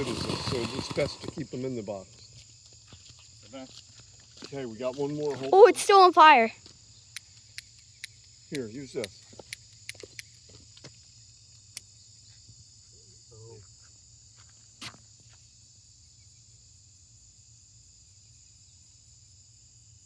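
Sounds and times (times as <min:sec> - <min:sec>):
crickets trilling: 0:00.0 - 0:20.0
sharp clicks: 0:07.1 - 0:10.4.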